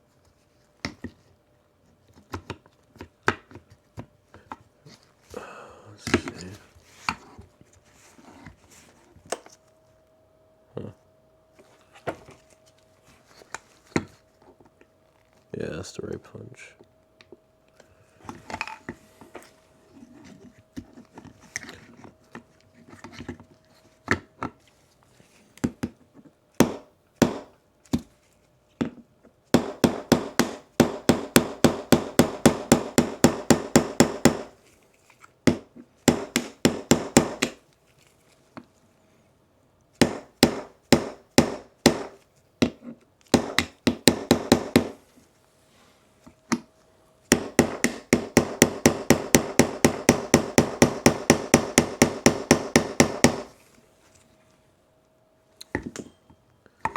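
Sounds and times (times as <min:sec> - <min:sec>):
hammer tapping a pin punch: 0:26.6 - 0:28.1, 0:29.6 - 0:34.6, 0:35.5 - 0:37.6, 0:40.0 - 0:45.0, 0:47.3 - 0:53.6.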